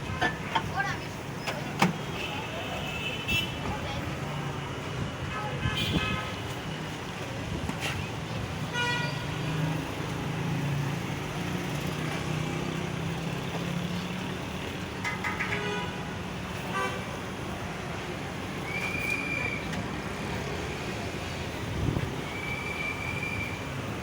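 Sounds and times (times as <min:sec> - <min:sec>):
street traffic: 0:00.0 - 0:24.0.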